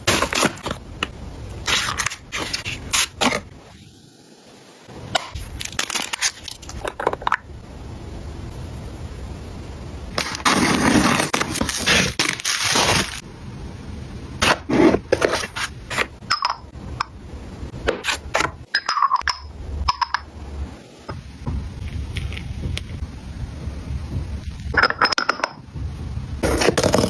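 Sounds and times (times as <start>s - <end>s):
wrapping crinkling: 10.2s - 13.2s.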